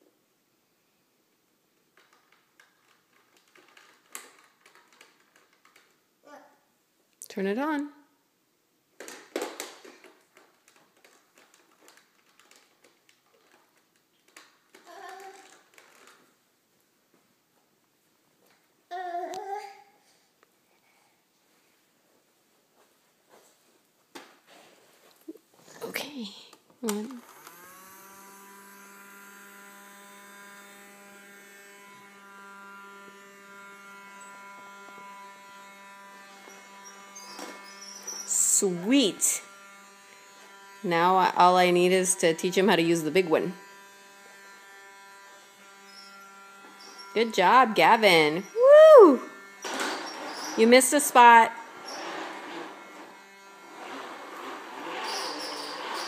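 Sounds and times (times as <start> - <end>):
toy vacuum clicking and rattling: 1.9 - 6.0, 9.0 - 16.3, 26.8 - 38.3, 51.7 - 56.0
vacuum cleaner motor humming: 27.1 - 56.0.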